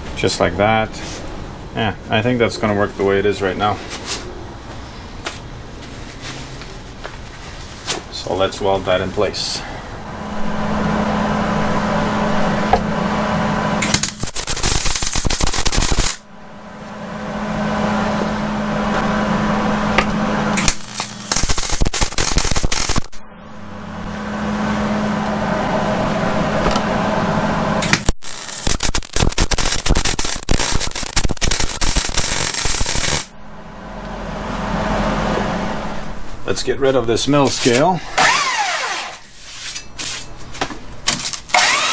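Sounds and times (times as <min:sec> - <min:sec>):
steady welder hum: 0:08.9 - 0:36.6, 0:37.4 - 0:40.2, 0:41.3 - 0:41.9
welding arc crackling: 0:13.8 - 0:16.3, 0:20.5 - 0:23.2, 0:27.8 - 0:33.3.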